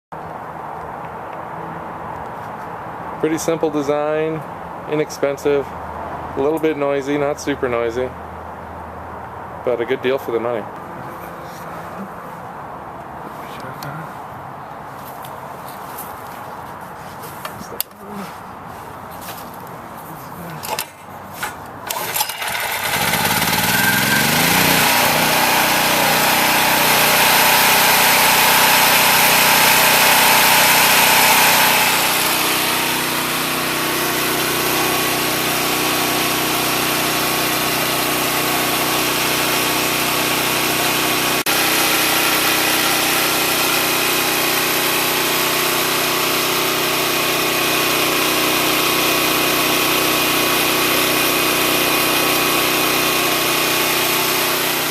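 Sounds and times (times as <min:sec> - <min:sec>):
generator engine starting and running: 0:20.6 - 0:54.9.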